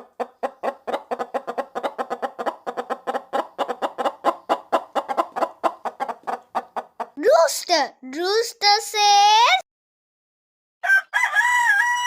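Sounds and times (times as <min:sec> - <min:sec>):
chicken clucking: 0:00.0 - 0:07.2.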